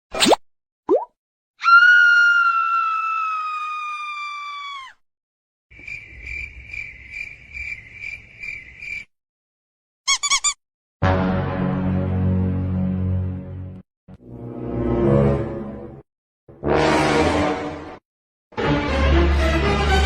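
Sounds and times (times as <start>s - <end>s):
cricket chirping: 5.7s - 9.1s.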